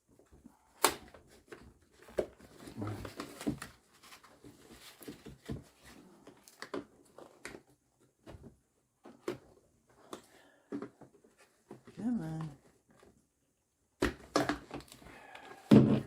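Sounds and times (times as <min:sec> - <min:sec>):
hands clicking plastic car parts: 0:14.0 - 0:15.0.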